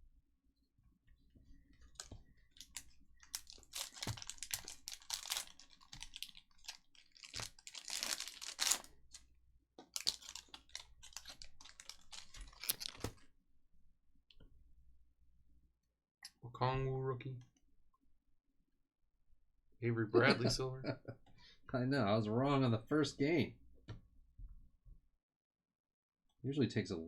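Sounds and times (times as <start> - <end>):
trading cards being flipped: 1.9 - 9.2, 9.8 - 13.3.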